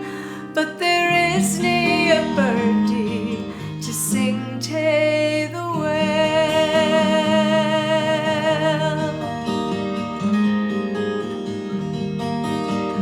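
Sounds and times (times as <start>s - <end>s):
woman singing with vibrato: 0.0s - 9.4s
acoustic guitar: 0.0s - 13.0s.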